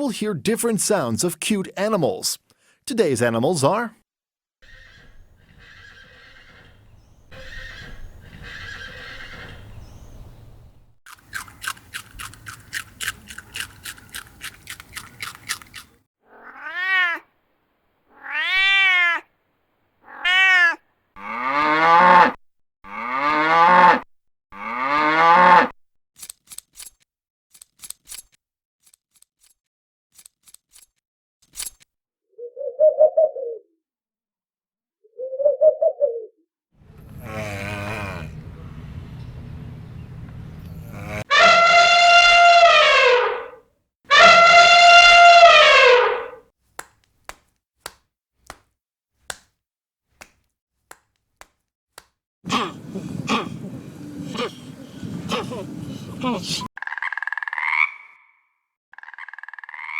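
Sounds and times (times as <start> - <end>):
animal calls: 4.6 - 9.8, 52.5 - 58.4.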